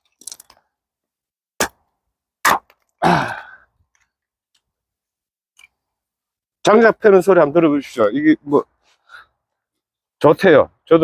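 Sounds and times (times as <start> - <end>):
axe striking log: 1.6 - 2.8.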